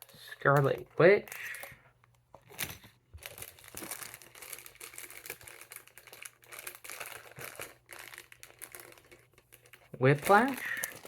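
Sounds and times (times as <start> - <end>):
plastic packaging crinkling: 2.4 - 11.0.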